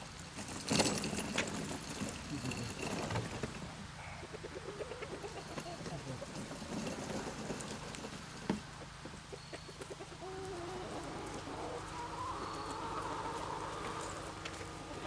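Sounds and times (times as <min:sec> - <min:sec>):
chickens clucking: 0:02.3 - 0:15.0
crackling rustle: 0:09.8 - 0:15.0.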